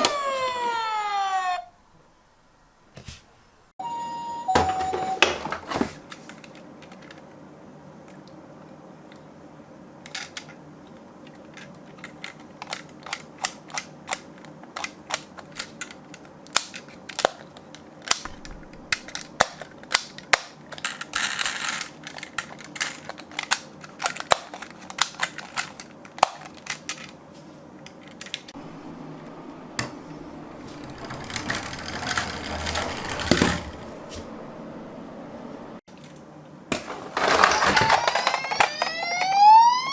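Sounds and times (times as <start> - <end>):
rolling rattle: 30.4 - 34.3, 36.8 - 38.8
toy cars clicking on track: 30.8 - 33.7.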